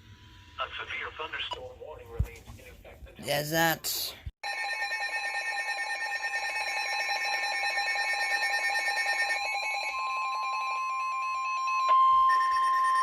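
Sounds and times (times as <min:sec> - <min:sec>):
steady alarm tone: 0:04.4 - 0:13.0.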